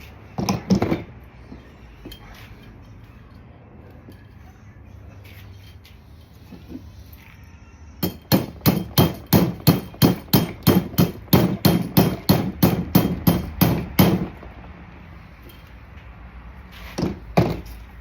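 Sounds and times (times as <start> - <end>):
hammer striking: 8.0 - 14.4.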